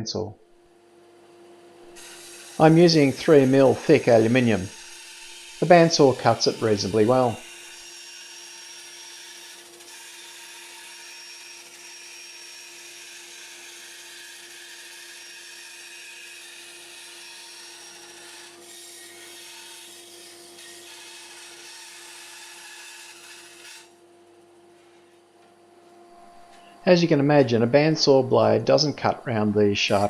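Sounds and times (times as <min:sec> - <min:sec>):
saw motor humming: 0:01.9 - 0:07.6, 0:26.2 - 0:30.0
bandsaw blade cutting metal: 0:02.0 - 0:07.8, 0:27.6 - 0:30.0.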